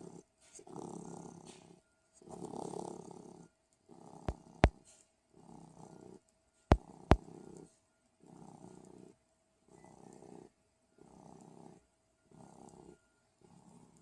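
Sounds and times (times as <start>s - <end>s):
pet snoring: 0.6s - 1.6s, 2.3s - 4.3s, 9.8s - 14.0s.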